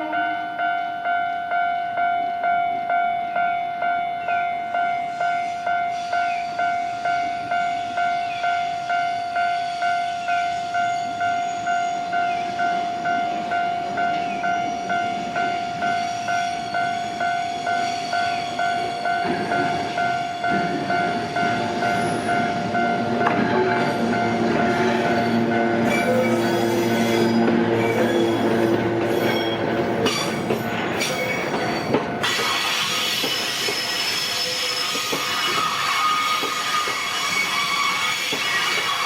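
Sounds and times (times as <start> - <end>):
level-crossing bell ringing: 0.0 - 31.9
train rumble: 9.8 - 39.0.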